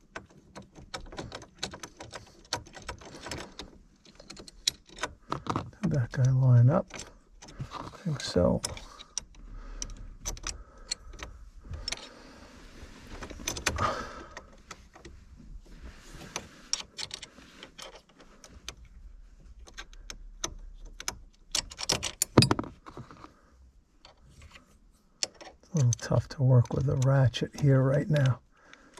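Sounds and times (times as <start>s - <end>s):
metallic clicks of hand tools: 0.0s - 12.1s, 19.6s - 22.7s.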